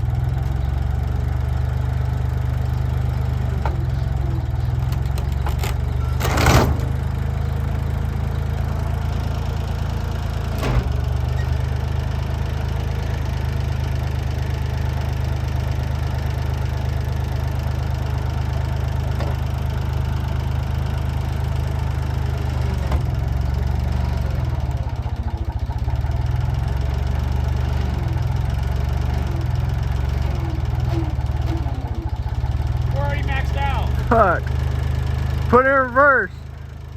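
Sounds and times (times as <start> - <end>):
bulldozer engine running: 0.0 - 36.9.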